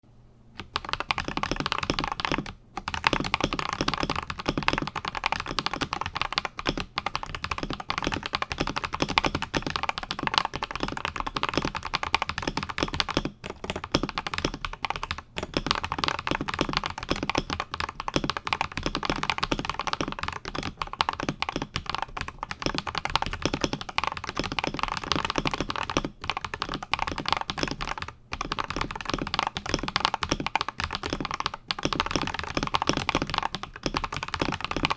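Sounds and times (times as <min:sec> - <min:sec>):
mechanical keyboard typing: 0:00.6 - 0:34.9.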